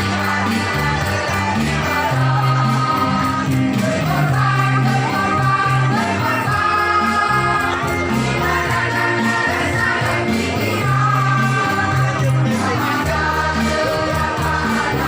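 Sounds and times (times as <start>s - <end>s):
choir singing: 0.0s - 15.0s.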